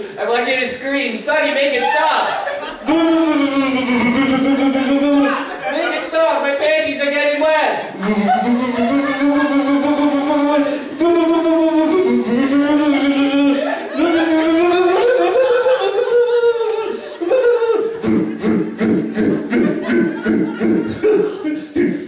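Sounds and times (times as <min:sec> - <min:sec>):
person singing long notes: 0:02.8 - 0:05.5, 0:08.0 - 0:21.2.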